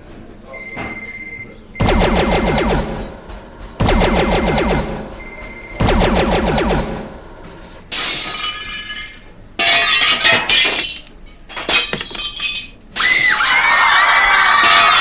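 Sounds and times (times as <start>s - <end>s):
loud wavering tone: 1.8s - 7.8s.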